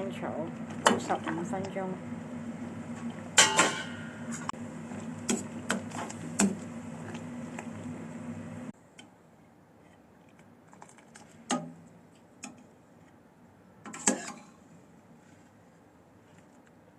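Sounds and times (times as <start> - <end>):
steady low hum: 0.0 - 9.9
kitchenware clinking: 3.4 - 4.2.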